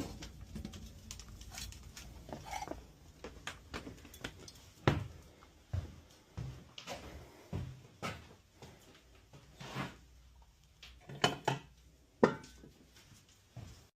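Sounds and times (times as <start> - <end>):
wood scraping: 0.0 - 3.0.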